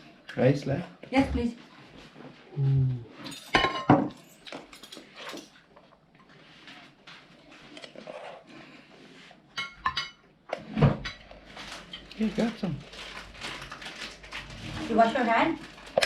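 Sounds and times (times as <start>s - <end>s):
cutlery clinking on dishes: 3.2s - 5.6s, 9.5s - 10.2s.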